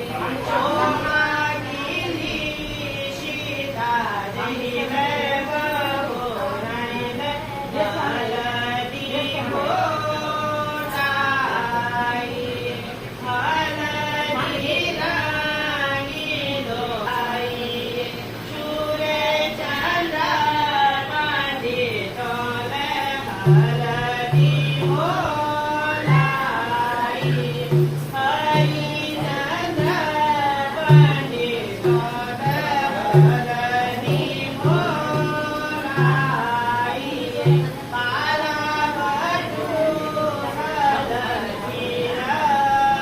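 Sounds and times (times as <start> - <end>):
low hand drum beating: 23.4 - 36.5, 37.3 - 37.9.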